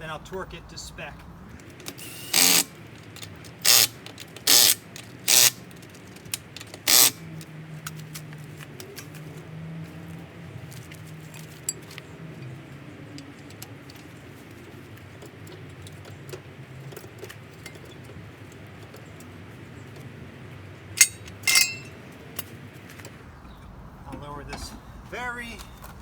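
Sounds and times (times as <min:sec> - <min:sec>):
light metallic tool clicks: 0:21.0 - 0:22.0
sharp metal clanks: 0:21.0 - 0:22.0.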